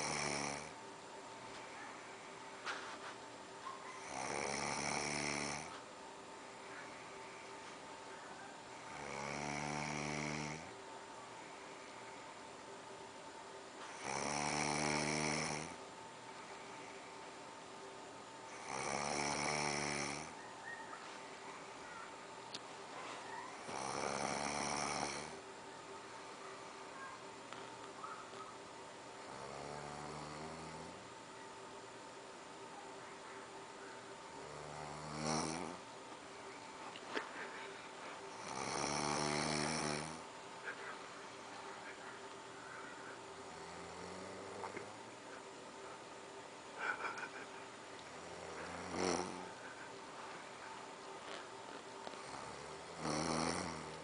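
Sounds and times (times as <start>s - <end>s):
person snoring: 0.0s - 0.8s, 4.0s - 5.8s, 8.9s - 10.8s, 13.9s - 15.8s, 18.5s - 20.4s, 23.6s - 25.4s, 29.3s - 31.0s, 34.4s - 35.8s, 38.3s - 40.3s, 48.1s - 49.7s, 52.1s - 54.0s.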